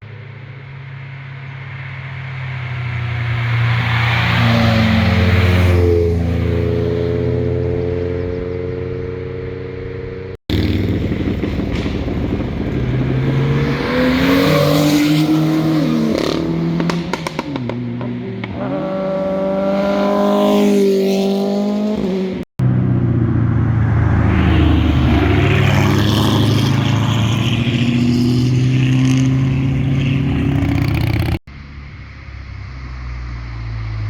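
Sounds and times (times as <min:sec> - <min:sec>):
sports car exhaust revving: 0:05.4 - 0:20.4
exhaust cracks: 0:10.5 - 0:18.6.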